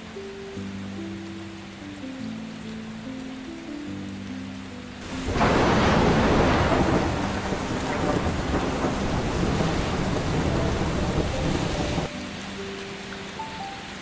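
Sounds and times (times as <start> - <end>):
heavy rain: 0.0 - 14.0
thunder rumble: 5.0 - 12.1.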